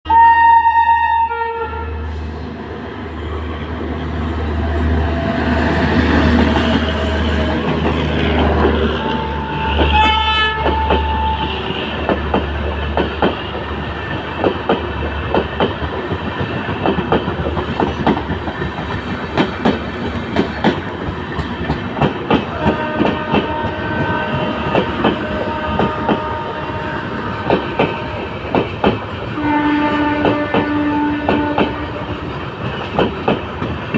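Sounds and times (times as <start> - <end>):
train horn: 0.1 - 2.4, 4.7 - 12.2, 22.5 - 28.5, 29.3 - 32.4
train wheels clattering over rail joints: 11.9 - 26.6, 27.3 - 29.4, 30.0 - 33.9.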